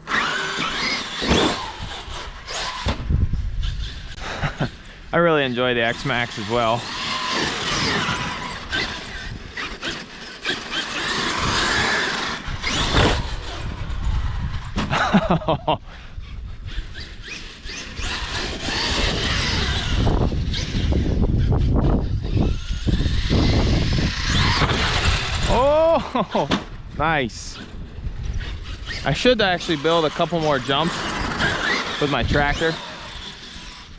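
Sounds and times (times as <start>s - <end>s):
tyres rumbling on dirt: 0.0s - 3.1s, 3.9s - 15.6s, 17.2s - 33.9s
rc truck electric motor whining: 0.0s - 33.9s.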